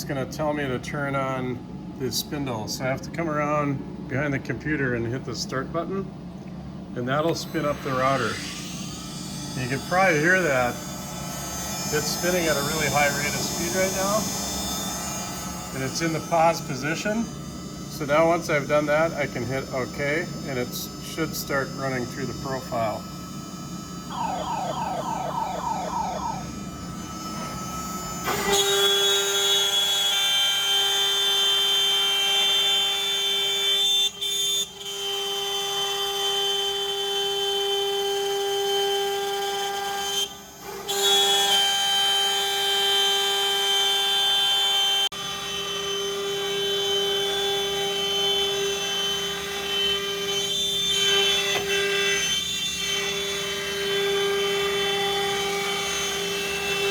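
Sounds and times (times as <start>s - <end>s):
router spindle whining: 7.2s - 30.3s
router bit cutting plywood: 7.2s - 34.6s, 37.1s - 56.9s.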